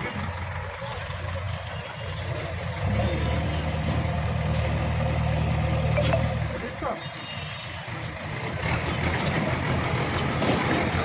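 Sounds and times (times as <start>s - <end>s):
bulldozer engine revving: 2.5s - 6.7s.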